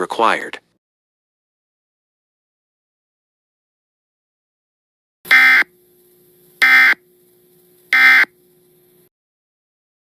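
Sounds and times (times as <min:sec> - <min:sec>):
buzzing digital data bursts: 0:05.3 - 0:09.1
faint steady tone: 0:05.3 - 0:09.1.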